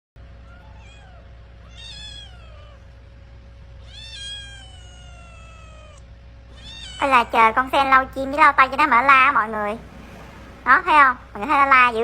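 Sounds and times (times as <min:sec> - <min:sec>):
kitten meowing: 0:00.4 - 0:02.9, 0:03.8 - 0:07.6.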